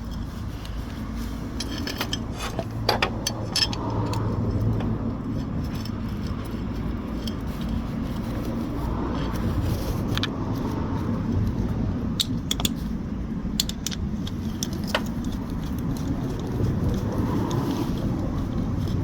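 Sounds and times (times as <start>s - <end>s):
metal tools clinking: 0.0s - 8.2s
steady low rumble: 0.0s - 19.0s.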